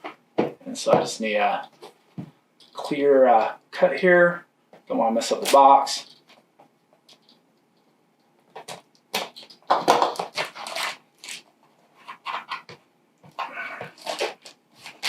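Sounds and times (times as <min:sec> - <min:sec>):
cutting tape and cardboard: 0:08.6 - 0:15.0.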